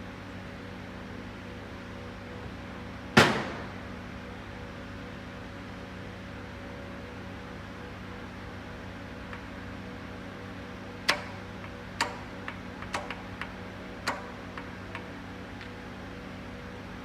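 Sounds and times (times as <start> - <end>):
steady hum: 0.0 - 17.0
loud knocks: 3.2 - 3.9.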